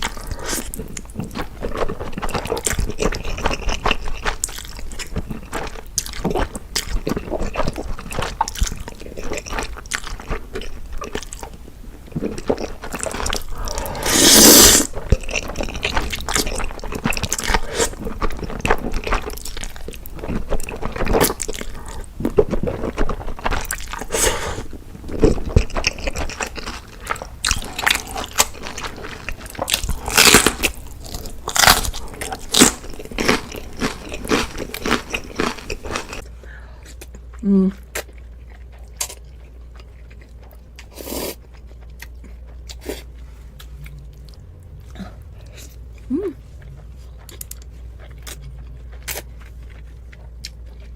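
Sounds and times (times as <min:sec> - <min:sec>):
biting and chewing crunching: 0:00.0 - 0:36.3, 0:36.9 - 0:50.9
wet mouth sounds: 0:12.6 - 0:15.8.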